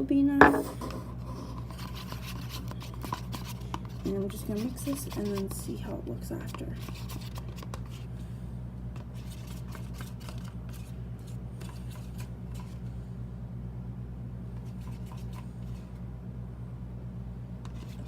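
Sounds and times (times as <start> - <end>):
steady low hum: 0.0 - 18.0
spoon scraping and tapping cup: 0.4 - 1.0.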